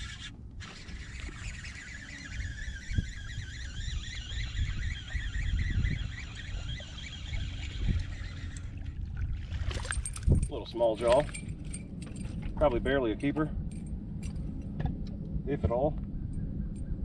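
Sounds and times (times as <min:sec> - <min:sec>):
fishing reel whirring: 0:00.0 - 0:09.0
low rumble: 0:04.4 - 0:17.0.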